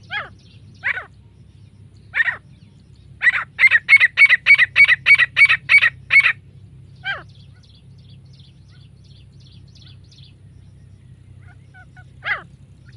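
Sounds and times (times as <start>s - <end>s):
francolin calling: 0.0s - 12.9s
small birds chirping: 0.0s - 12.9s.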